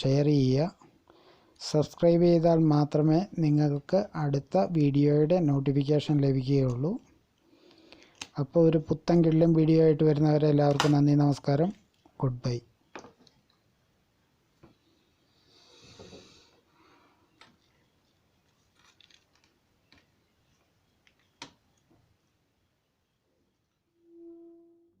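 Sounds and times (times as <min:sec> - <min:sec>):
soft rustle: 0:14.7 - 0:22.4
low steady tone: 0:23.0 - 0:25.0.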